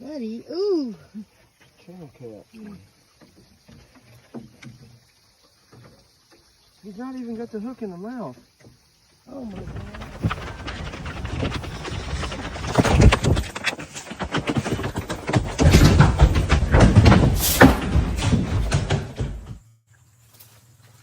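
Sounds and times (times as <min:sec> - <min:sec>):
fish thrashing: 0:09.4 - 0:17.6.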